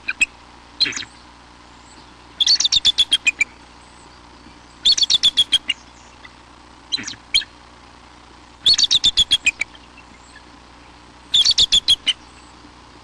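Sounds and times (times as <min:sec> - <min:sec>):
bird chirping: 0:00.0 - 0:07.6, 0:08.6 - 0:12.7.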